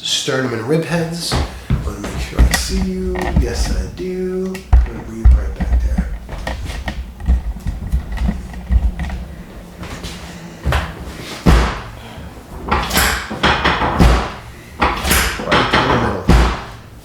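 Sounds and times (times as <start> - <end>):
rustling: 1.2 - 12.7
dull thumps on treatment table: 1.3 - 12.1.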